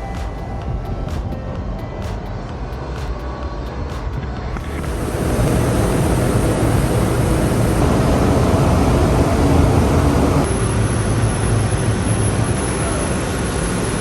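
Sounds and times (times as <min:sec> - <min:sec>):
ship machinery rumbling: 0:04.6 - 0:10.5
thin high whine: 0:04.6 - 0:14.0.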